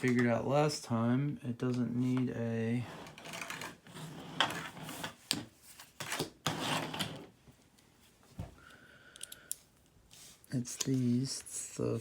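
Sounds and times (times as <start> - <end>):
scraping rub: 6.0 - 7.2.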